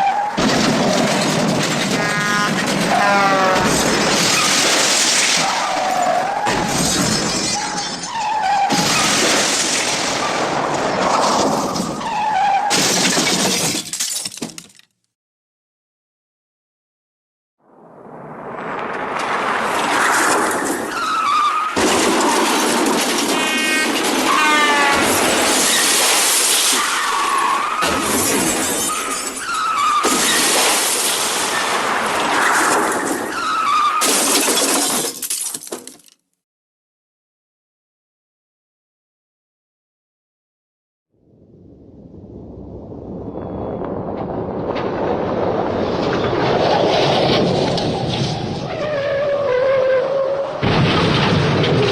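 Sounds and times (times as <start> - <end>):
loud crashing and shattering: 6.5 - 10.7
cartoon crash sound effect: 23.2 - 25.2.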